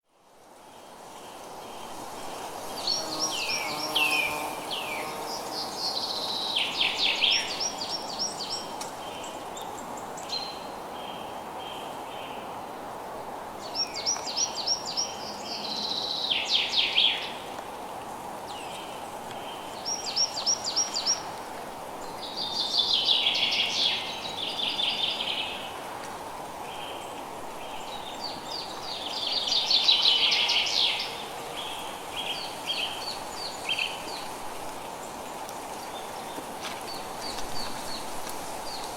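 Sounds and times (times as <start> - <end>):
rain hiss: 0.2 - 38.9
songbirds singing: 2.8 - 12.4.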